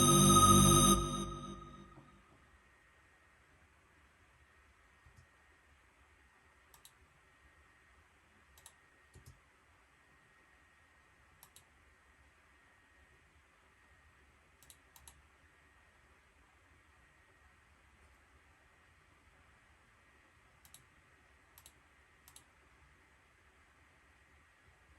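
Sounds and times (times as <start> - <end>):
low steady hum: 0.0 - 1.9.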